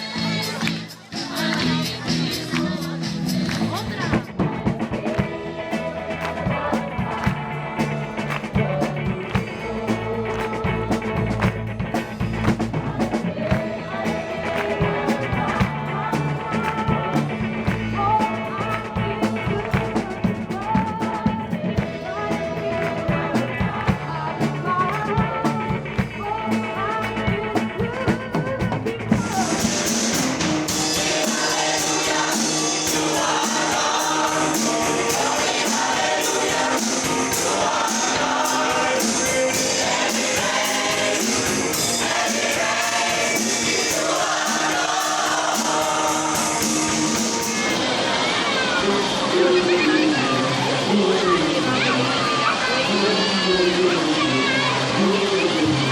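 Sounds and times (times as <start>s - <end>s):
choir singing: 0.0s - 27.2s, 29.1s - 50.2s
gospel singing with band: 0.0s - 53.7s.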